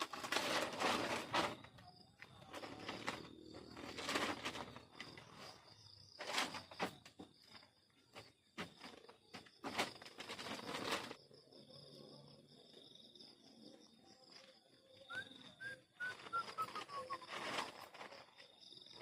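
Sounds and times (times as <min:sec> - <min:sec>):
rustling: 0:00.0 - 0:11.2, 0:15.6 - 0:19.0
crickets chirping: 0:00.0 - 0:19.0.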